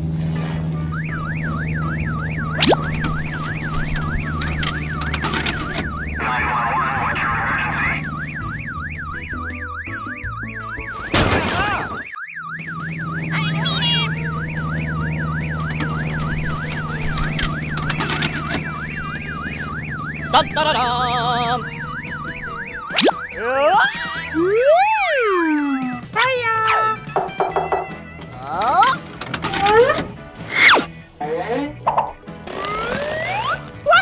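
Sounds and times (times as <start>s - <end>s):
warbling emergency siren: 0.8s - 26.8s, 32.5s - 33.7s.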